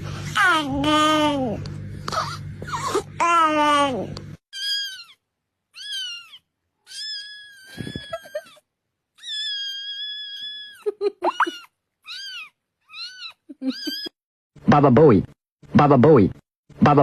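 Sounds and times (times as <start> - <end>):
kitten chirps: 4.6 - 5.2, 5.8 - 8.5, 9.2 - 14.1
kitten mewing: 5.8 - 8.5, 9.2 - 14.1.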